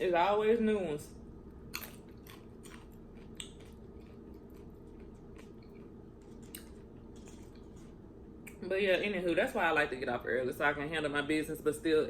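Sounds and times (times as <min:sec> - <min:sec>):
steady low hum: 0:00.0 - 0:12.0
person chewing: 0:01.6 - 0:08.6.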